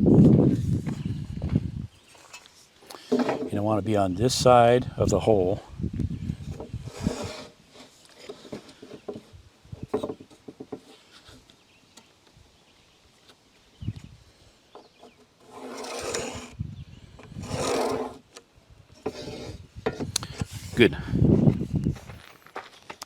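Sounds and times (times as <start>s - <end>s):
rasping rubs: 6.8s - 8.8s, 15.4s - 16.6s, 17.4s - 18.2s.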